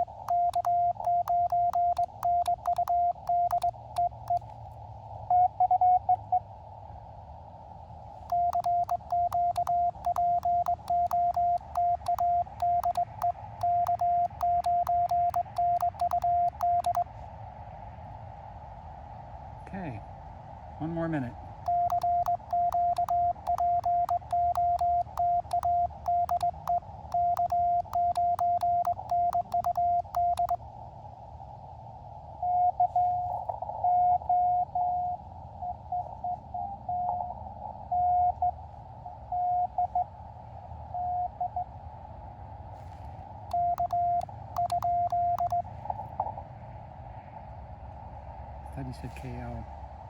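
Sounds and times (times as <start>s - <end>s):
morse code sidetone with clicks: 0.0s - 4.4s, 8.3s - 17.0s, 21.7s - 30.6s, 43.5s - 45.6s
weak morse code reply: 0.0s - 4.4s, 8.3s - 17.0s, 21.7s - 30.6s, 43.5s - 45.6s.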